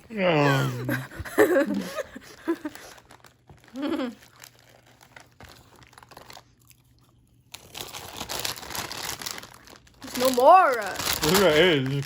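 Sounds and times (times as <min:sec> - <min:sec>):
plastic chip bag crinkling: 0:02.2 - 0:12.0
chips crunching: 0:02.8 - 0:12.0.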